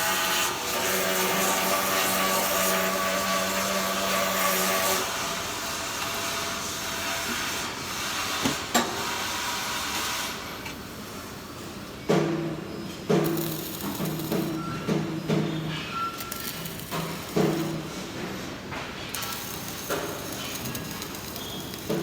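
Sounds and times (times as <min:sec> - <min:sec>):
welding arc crackling: 0:13.2 - 0:14.6, 0:16.1 - 0:17.9, 0:19.1 - 0:22.0
vehicle reversing beeper: 0:15.9 - 0:16.5.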